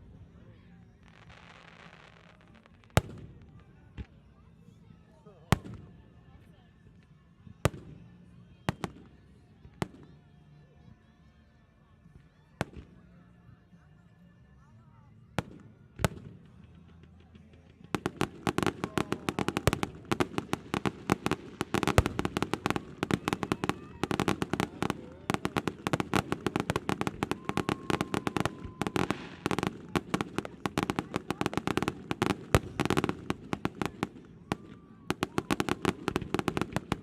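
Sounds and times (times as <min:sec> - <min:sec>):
fireworks cracking and popping: 0:01.0 - 0:04.1, 0:15.4 - 0:37.0.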